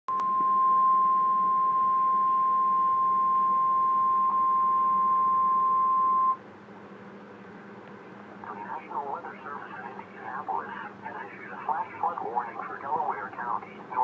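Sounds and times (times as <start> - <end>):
steady high warning beep: 0.1 - 6.4.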